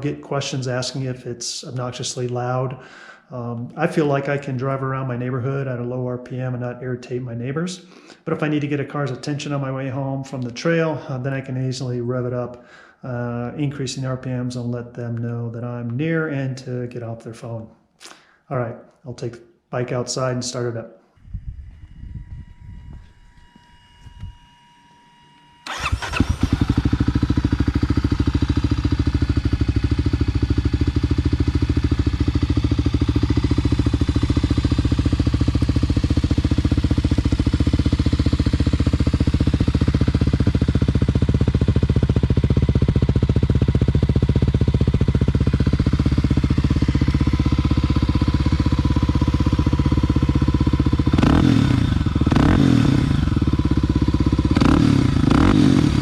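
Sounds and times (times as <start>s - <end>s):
engine revving: 25.6s - 42.8s, 46.1s - 56.0s
motorcycle engine idling: 25.6s - 56.0s.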